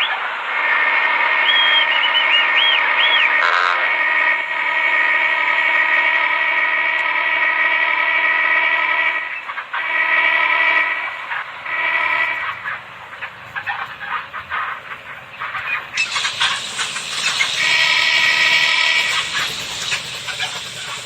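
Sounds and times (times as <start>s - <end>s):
multi-tone horn chord: 3.4s - 9.2s.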